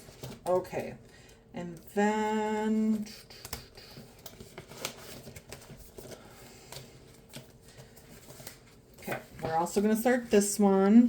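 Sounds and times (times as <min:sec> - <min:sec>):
paper rustling: 0:03.4 - 0:10.5.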